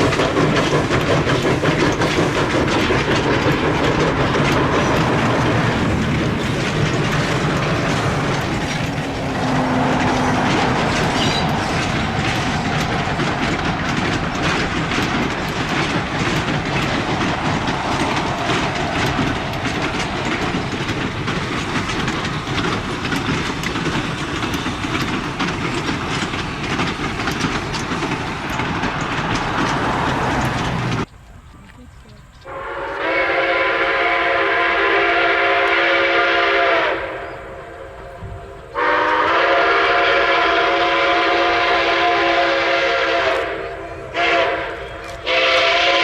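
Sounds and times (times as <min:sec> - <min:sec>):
wheel clicks over rail joints: 0:00.0 - 0:31.4
steam train rushing past: 0:00.0 - 0:46.0.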